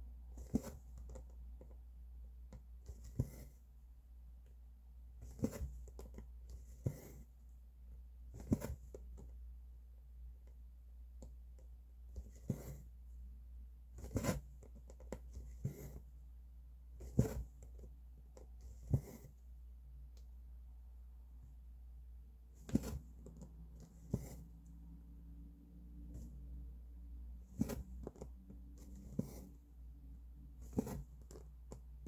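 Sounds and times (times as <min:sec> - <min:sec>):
needle and thread through fabric: 0:00.2 - 0:01.8, 0:02.5 - 0:03.7, 0:05.2 - 0:07.5, 0:13.9 - 0:16.3, 0:17.0 - 0:19.6, 0:22.4 - 0:25.3, 0:25.9 - 0:32.0.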